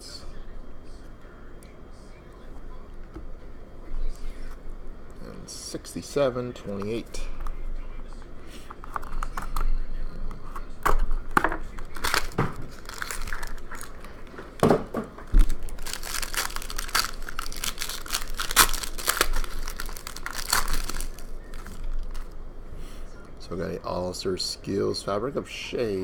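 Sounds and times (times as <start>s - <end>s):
plastic and foil crinkling and tearing: 8.6s - 22.4s
handling thumps: 10.6s - 17.1s.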